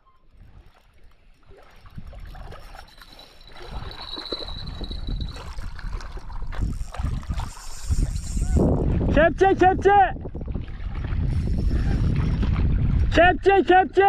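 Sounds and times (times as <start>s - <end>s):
water gurgling and sloshing: 0.0s - 9.2s, 10.1s - 13.2s
wind rumble: 3.4s - 13.5s.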